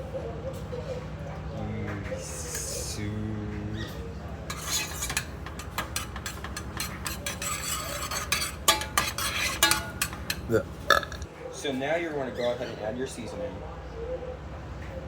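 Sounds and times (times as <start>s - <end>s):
utensil scraping a pot: 4.4s - 11.3s.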